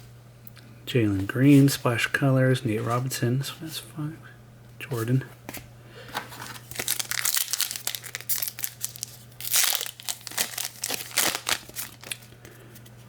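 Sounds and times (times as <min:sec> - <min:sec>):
wrapper crinkling and ripping: 0:06.4 - 0:12.4.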